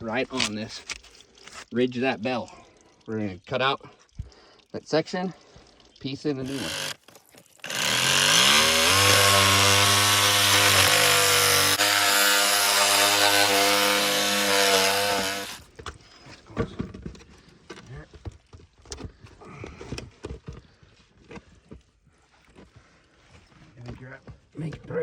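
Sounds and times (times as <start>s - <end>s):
power saw cutting pipe: 6.4s - 15.7s.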